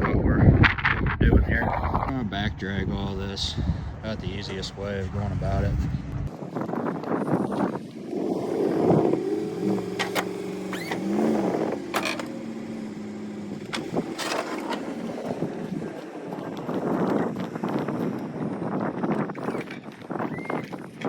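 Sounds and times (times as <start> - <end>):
snowplow engine running: 8.1 - 18.7.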